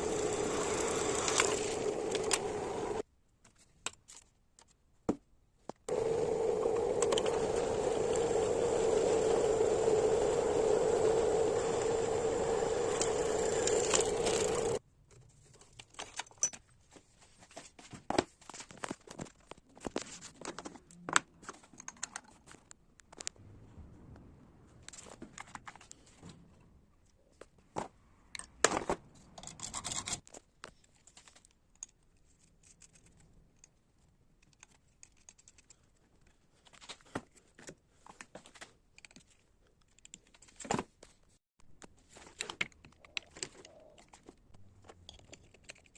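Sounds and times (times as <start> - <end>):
loud humming noise: 0.0 - 3.0, 5.9 - 14.8
clicks and taps of small parts: 19.1 - 23.4, 34.4 - 36.4, 38.9 - 40.4, 41.8 - 45.9.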